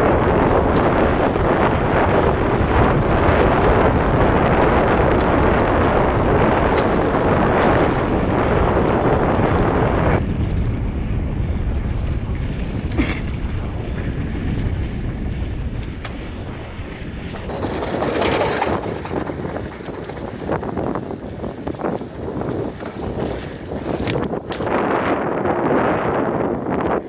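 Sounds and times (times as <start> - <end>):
bike clicks and rattles: 0.0 - 10.8, 15.4 - 25.1
tyres rumbling on trail: 0.0 - 27.0
wind buffeting microphone: 0.0 - 27.0.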